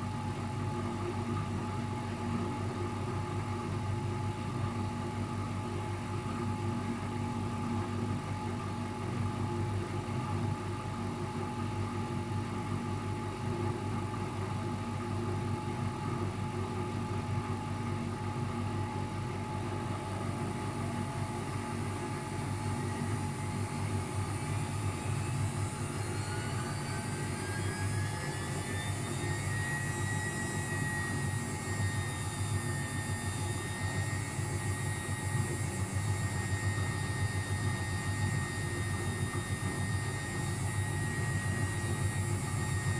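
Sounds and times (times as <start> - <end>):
washing machine drumming hum: 0.0 - 42.9
motor whine rising: 22.7 - 42.9.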